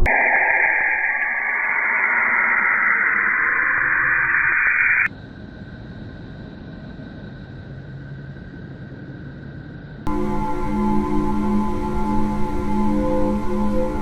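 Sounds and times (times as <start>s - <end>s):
faint high tones: 10.1s - 14.0s
steady hum: 10.1s - 14.0s.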